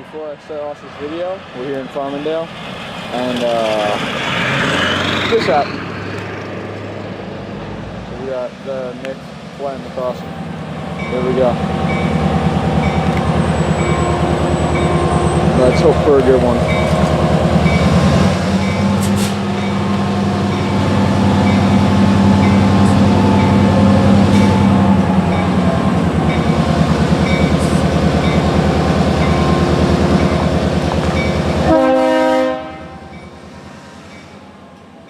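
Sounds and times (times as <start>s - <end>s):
diesel locomotive engine running: 0.0s - 35.0s
train horn note: 31.5s - 33.2s.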